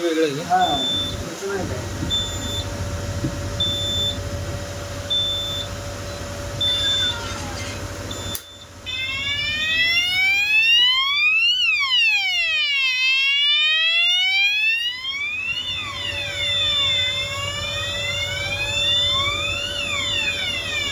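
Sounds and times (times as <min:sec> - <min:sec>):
fire alarm electronic wail: 0:03.6 - 0:04.2, 0:06.6 - 0:20.9
steady high tone: 0:14.8 - 0:20.9.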